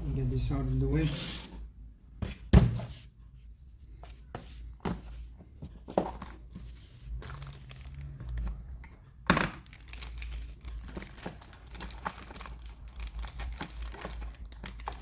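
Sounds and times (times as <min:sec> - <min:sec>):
plastic parts crinkling and rustling: 0:04.8 - 0:15.0.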